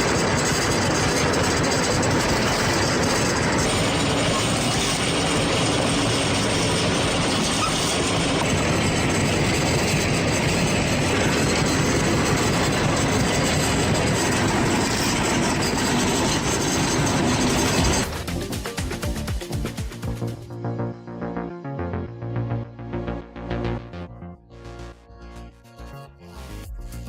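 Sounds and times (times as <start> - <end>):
wood chipper shredding wood: 0.0 - 19.3.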